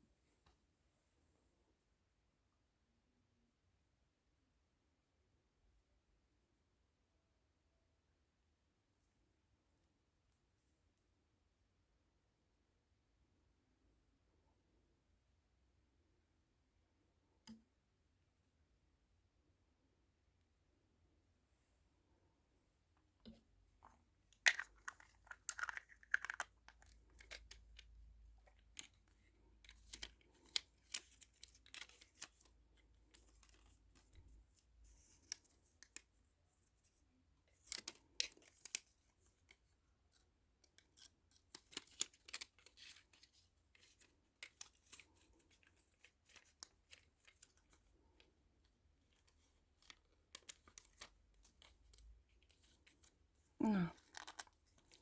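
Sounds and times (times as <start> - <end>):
plastic pieces clicking and scraping: 23.8 - 32.5, 37.5 - 48.3, 49.0 - 53.1, 54.0 - 55.0.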